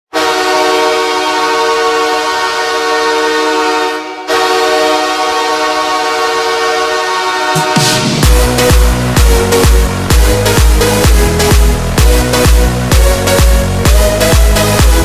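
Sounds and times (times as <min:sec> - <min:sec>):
arena goal horn blasts: 0:00.1 - 0:10.6.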